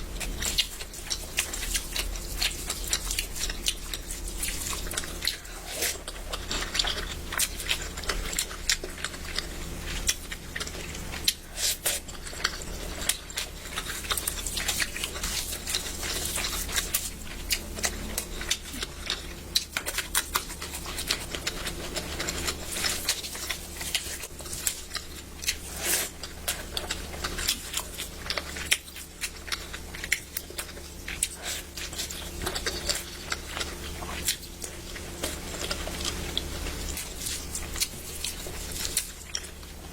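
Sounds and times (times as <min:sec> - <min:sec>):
steady low hum: 0:00.0 - 0:39.9
chewing and mouth clicks: 0:00.1 - 0:39.9.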